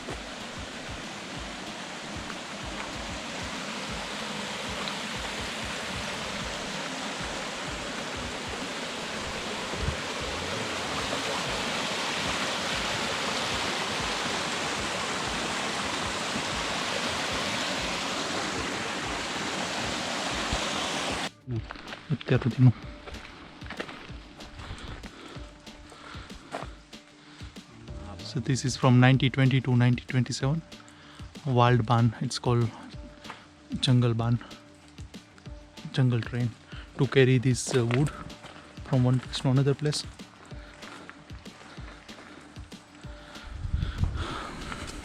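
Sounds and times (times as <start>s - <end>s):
stream water rushing: 0.0s - 21.3s.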